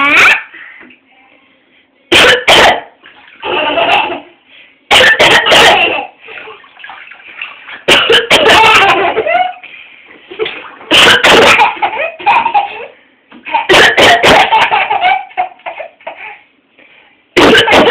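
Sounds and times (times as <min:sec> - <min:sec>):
woman coughing: 0:02.1 - 0:02.9, 0:04.9 - 0:06.1, 0:07.9 - 0:09.0, 0:10.9 - 0:11.8, 0:13.6 - 0:14.6, 0:17.4 - 0:17.9.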